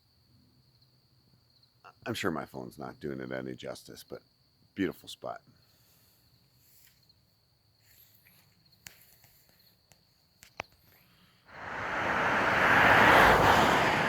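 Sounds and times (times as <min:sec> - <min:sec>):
faint high insect drone: 0:00.0 - 0:14.0
loud rushing noise: 0:11.6 - 0:14.0.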